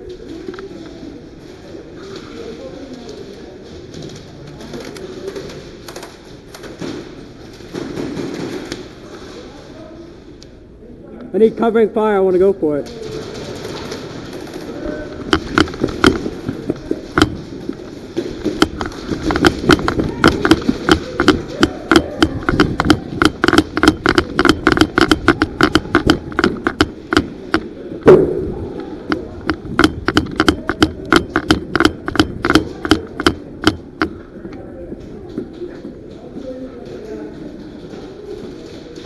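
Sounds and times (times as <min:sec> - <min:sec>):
airsoft guns firing: 0:06.6 - 0:09.0, 0:12.9 - 0:17.6, 0:18.2 - 0:28.4.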